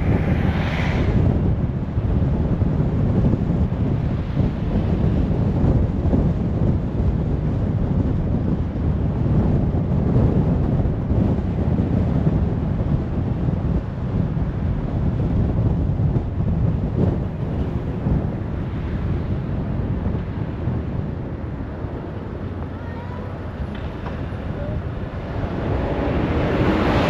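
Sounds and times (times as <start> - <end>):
car driving rumble: 0.0 - 27.0
wind buffeting microphone: 0.0 - 27.0.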